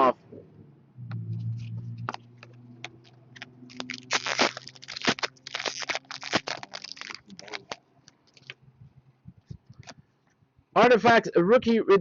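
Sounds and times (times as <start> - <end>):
trading cards rustling: 1.6 - 8.6.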